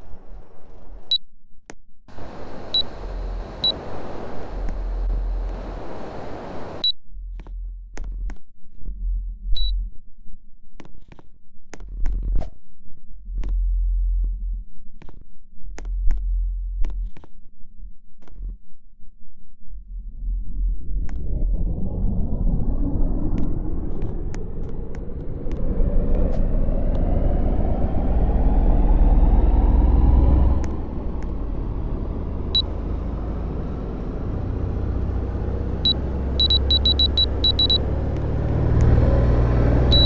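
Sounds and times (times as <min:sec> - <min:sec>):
air conditioner beeping: 0:02.2 - 0:04.3, 0:35.8 - 0:37.8
sharp clicks: 0:35.9 - 0:37.8.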